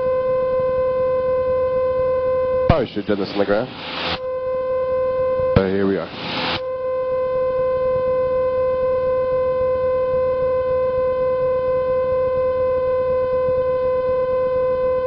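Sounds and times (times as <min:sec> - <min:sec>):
steady horn-like tone: 0:00.0 - 0:15.0
aircraft engine drone: 0:02.6 - 0:04.2, 0:05.4 - 0:06.6.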